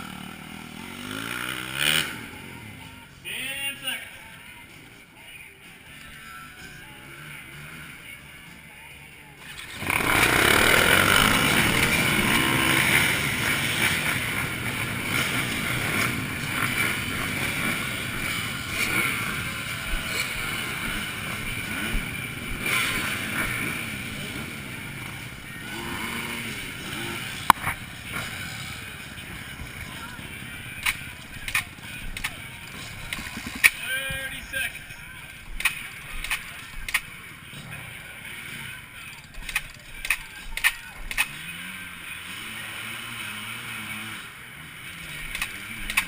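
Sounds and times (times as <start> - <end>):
motocross bikes revving: 0.0 - 4.2, 9.4 - 46.0
sharp clicks: 30.8 - 32.4, 35.5 - 37.1, 39.2 - 41.4, 45.3 - 46.0.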